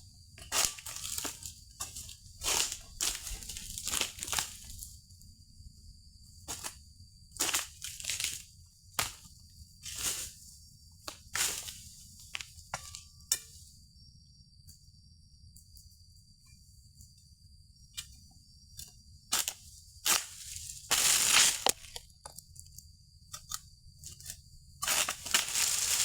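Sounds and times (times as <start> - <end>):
palm fronds crunching and tearing: 2.6 - 4.7, 7.5 - 8.4, 20.1 - 22.0, 24.8 - 26.0.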